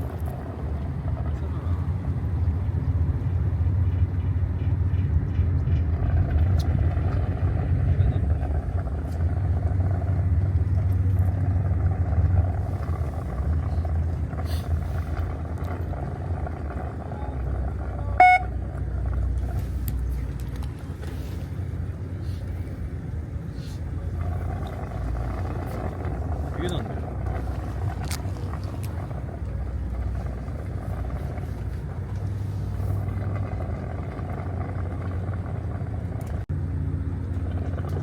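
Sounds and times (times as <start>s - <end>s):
boat engine rumbling: 0.0s - 38.0s
short high beep: 18.2s - 18.5s.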